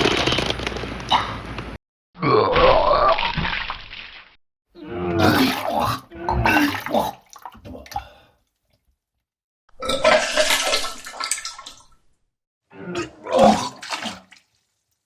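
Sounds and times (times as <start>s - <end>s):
person vomiting: 4.8s - 8.3s.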